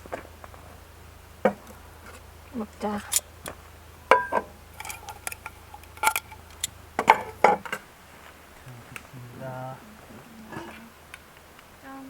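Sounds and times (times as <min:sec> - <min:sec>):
dishes and cutlery clinking: 0:04.2 - 0:07.8.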